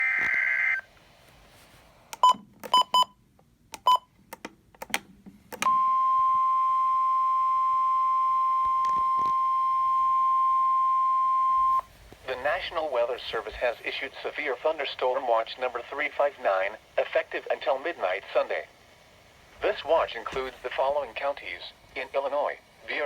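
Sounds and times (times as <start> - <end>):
steady alarm tone: 0.0 - 0.9
short data beeps and clicks: 2.2 - 3.1, 3.8 - 4.1.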